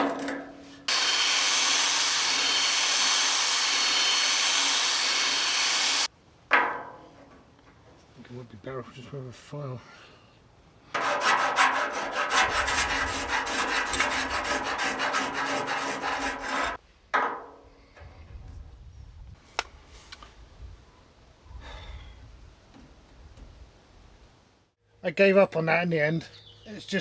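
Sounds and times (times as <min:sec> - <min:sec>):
hand file rasping on steel: 0:11.0 - 0:16.8.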